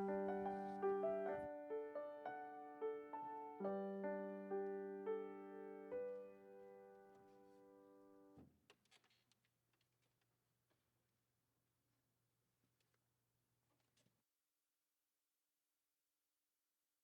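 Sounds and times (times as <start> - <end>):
slow piano melody: 0.0 - 8.4.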